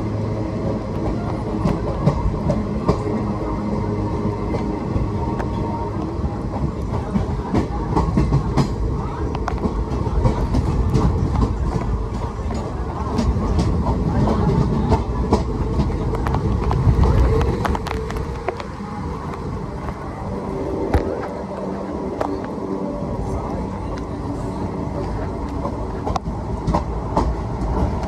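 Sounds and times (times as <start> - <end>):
train rumbling: 0.0 - 28.0
wheels clattering over rail joints: 0.0 - 28.0.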